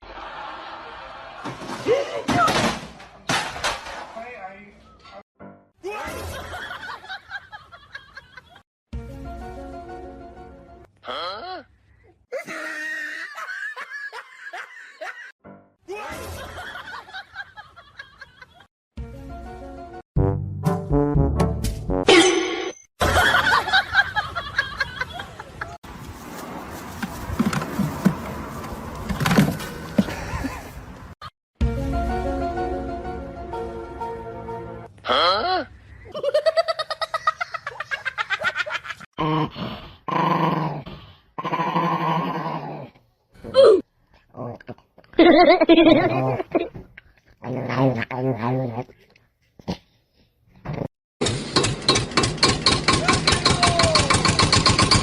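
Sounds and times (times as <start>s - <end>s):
person laughing: 12.3s - 15.3s, 23.0s - 25.8s, 29.9s - 30.9s, 45.2s - 46.8s.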